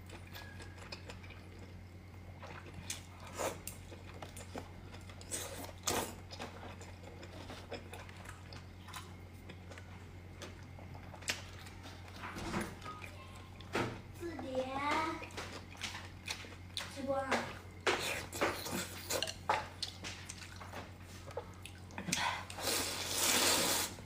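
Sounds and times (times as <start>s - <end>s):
chewing and mouth clicks: 0.0s - 12.2s, 17.8s - 22.6s
steady low hum: 0.0s - 24.0s.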